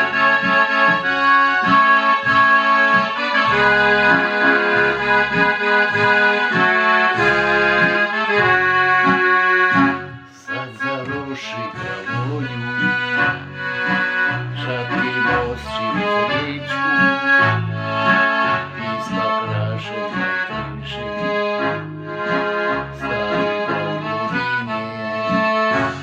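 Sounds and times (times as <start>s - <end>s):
bass line: 0.0s - 26.0s
reedy melody and chords: 0.0s - 26.0s.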